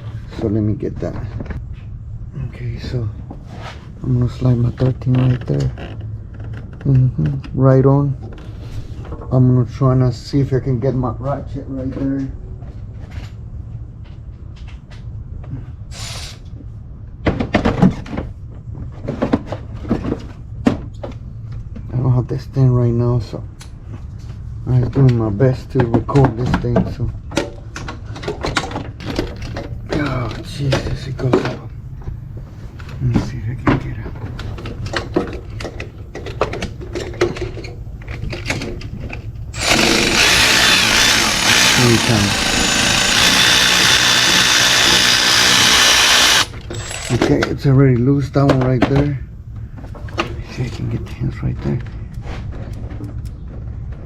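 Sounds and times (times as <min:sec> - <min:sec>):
power tool running: 0:39.5 - 0:47.3
ratchet clicking against metal: 0:39.6 - 0:47.2.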